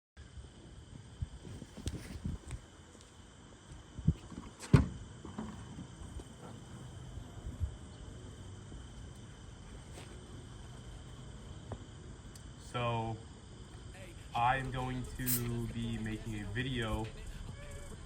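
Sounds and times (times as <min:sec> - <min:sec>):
faint steady hum: 0:00.2 - 0:18.0.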